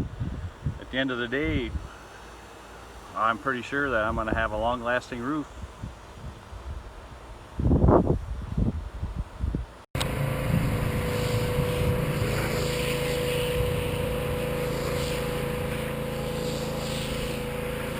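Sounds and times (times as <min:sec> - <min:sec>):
motor running with even hum: 0:10.0 - 0:17.9.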